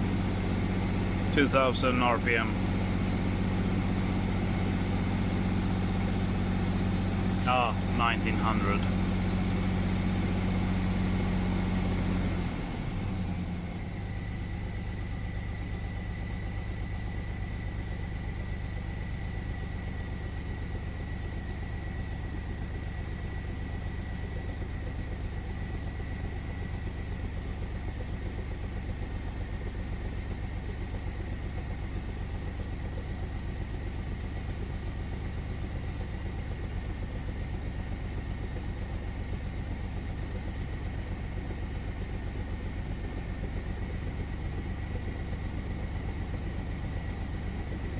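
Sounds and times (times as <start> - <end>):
misfiring engine revving and idling: 0.0 - 15.6.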